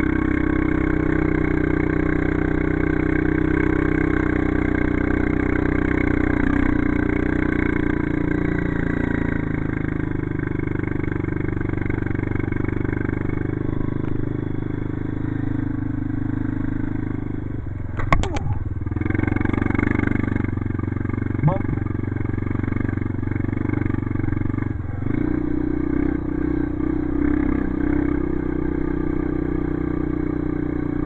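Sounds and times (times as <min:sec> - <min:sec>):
atv engine running: 0:00.0 - 0:31.0.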